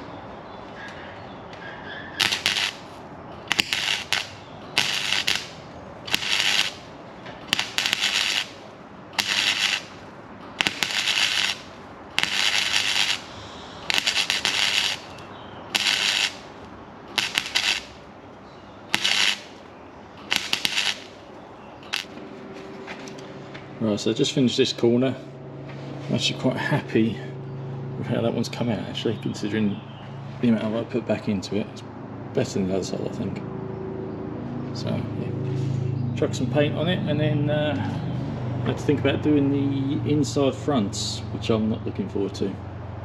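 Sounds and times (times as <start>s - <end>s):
welding crackling bursts: 2.2s - 18.1s, 18.9s - 22.2s.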